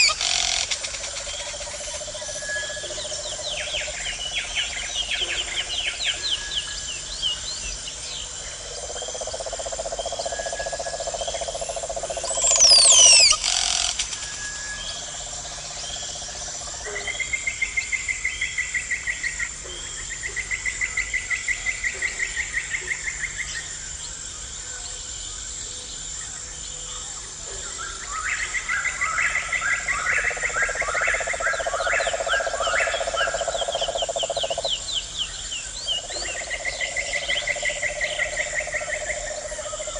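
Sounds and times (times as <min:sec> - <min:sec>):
insects trilling: 0:00.0 - 0:39.9
bird call of sweeping whistles: 0:12.4 - 0:14.8.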